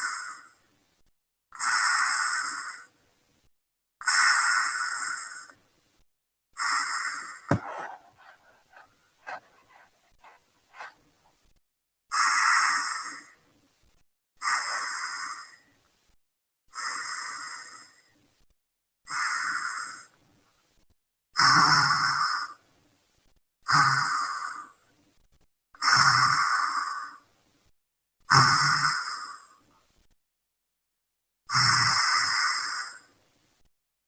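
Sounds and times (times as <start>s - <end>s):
person snoring: 7.5s - 11.0s.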